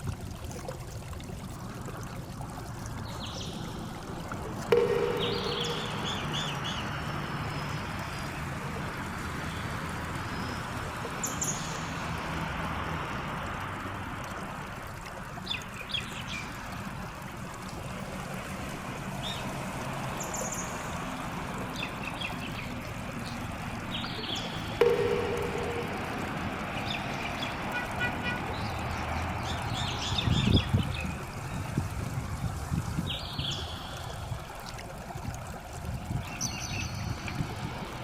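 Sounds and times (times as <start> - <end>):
running water: 0.0 - 38.0
low steady hum: 0.1 - 30.0
bird chirps: 4.7 - 8.2, 21.8 - 27.7.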